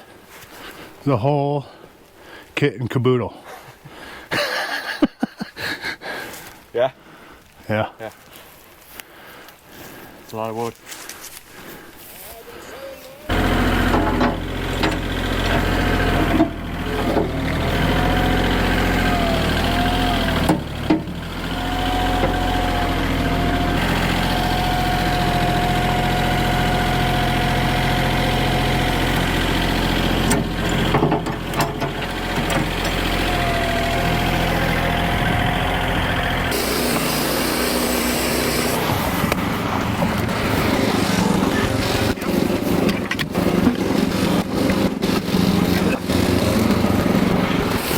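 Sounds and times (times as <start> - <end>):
sawmill engine running: 13.3 - 47.9.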